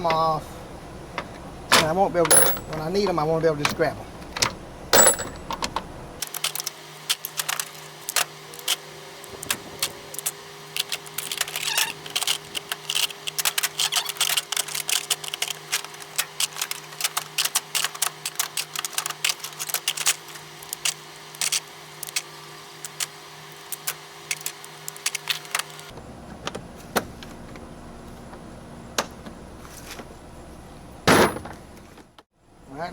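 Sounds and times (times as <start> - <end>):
steady low hum: 0.0 - 6.2
metal sockets clinking: 1.1 - 5.9.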